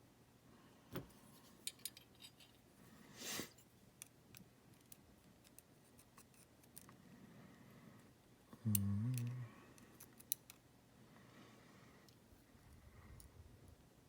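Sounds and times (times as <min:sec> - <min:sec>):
small metal parts clicking: 0:01.6 - 0:02.6, 0:08.7 - 0:10.6.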